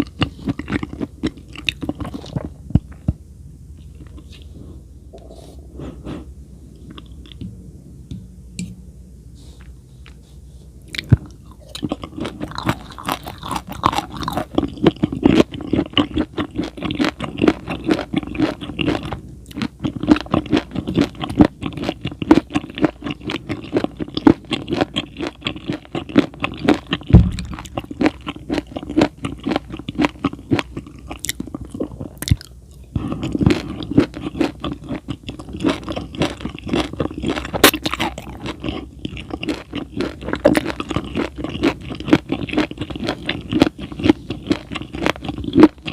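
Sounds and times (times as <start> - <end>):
close chewing crunches: 0.0 - 3.0, 10.9 - 45.9
wet mouth sounds: 24.9 - 36.2
low thump: 27.1 - 28.0.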